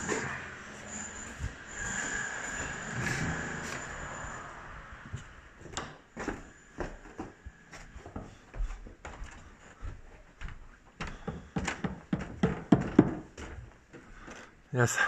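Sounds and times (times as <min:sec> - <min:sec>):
irregular knocks and clunks: 0:11.0 - 0:14.5.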